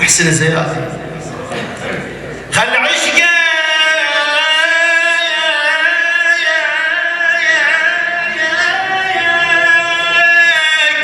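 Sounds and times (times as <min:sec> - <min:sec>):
man singing devotional chant: 0:02.6 - 0:11.0.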